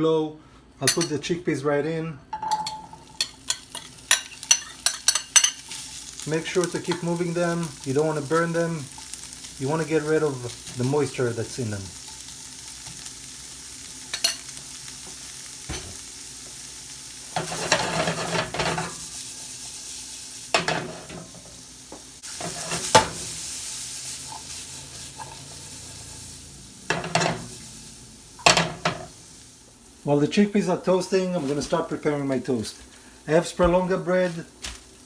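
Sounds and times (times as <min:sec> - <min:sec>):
chickpeas sizzling in a frying pan: 0:02.5 - 0:35.0
scraping and rattling in a pan: 0:17.4 - 0:19.8, 0:22.2 - 0:23.3.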